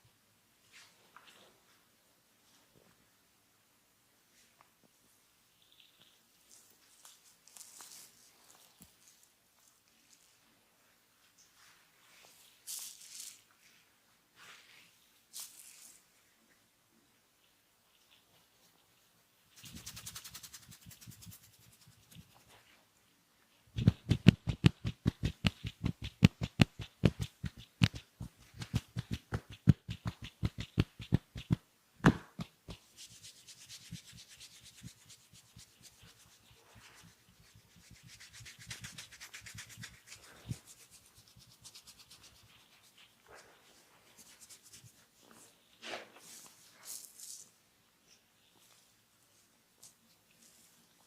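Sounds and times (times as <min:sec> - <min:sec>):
hands rubbing skin: 0:19.5 - 0:22.8, 0:23.7 - 0:45.4.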